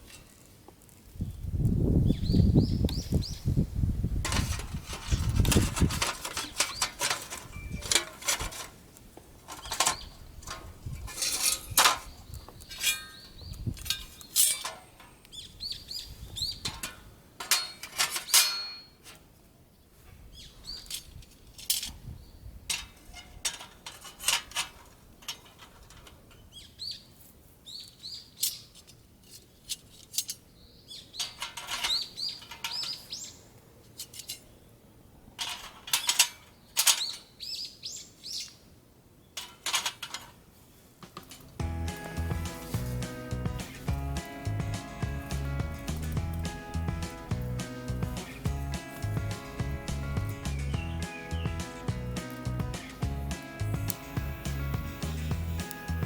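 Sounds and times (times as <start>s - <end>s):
small birds chirping: 1.2s - 3.6s, 9.5s - 10.4s, 12.0s - 16.8s, 19.8s - 21.2s, 26.3s - 28.8s, 30.5s - 34.8s, 36.5s - 39.4s, 41.4s - 56.0s
camping gear being handled: 4.3s - 15.5s, 39.4s - 56.0s.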